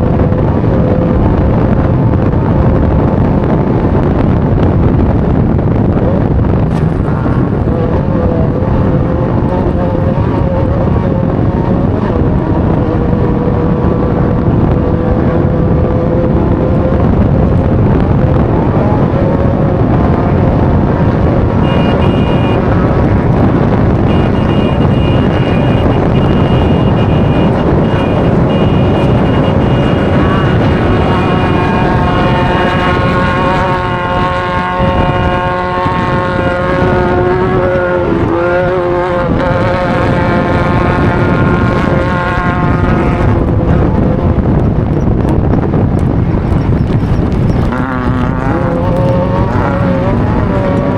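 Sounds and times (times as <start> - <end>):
vehicle engine running hard: 0.0 - 50.9
wind and road noise: 0.0 - 50.9.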